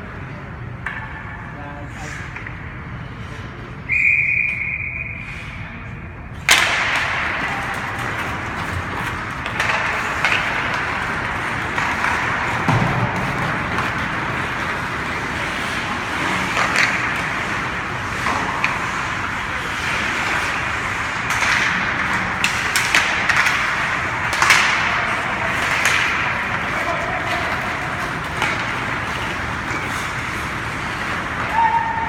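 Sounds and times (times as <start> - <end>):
hockey sticks and puck clacking: 0.1 - 3.3, 6.3 - 32.0.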